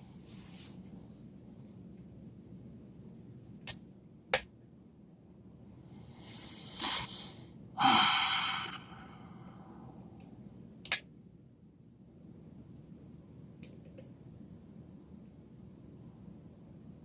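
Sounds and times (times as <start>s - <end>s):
hissing sounds: 6.2s - 9.2s.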